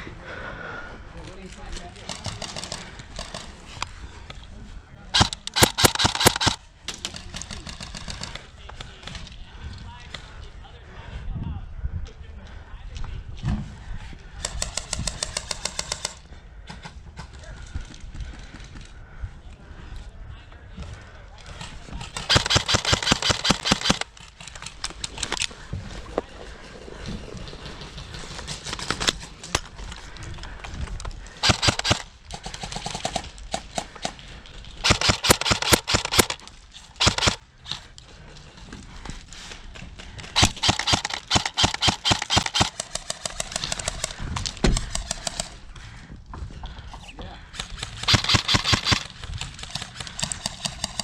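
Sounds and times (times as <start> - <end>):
airsoft rifles firing full-auto: 2.0 - 3.6, 5.2 - 8.4, 14.4 - 16.2, 22.0 - 25.2, 31.3 - 33.9, 34.8 - 37.4, 40.4 - 44.2, 47.6 - 51.0.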